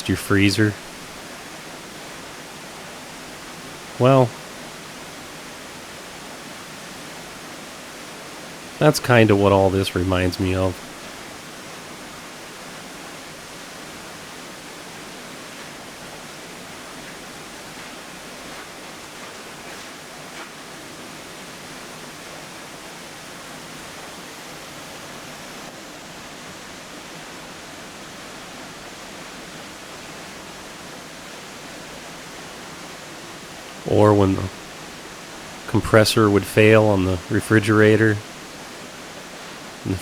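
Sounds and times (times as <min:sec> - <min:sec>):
waterfall rushing: 0:00.0 - 0:25.8.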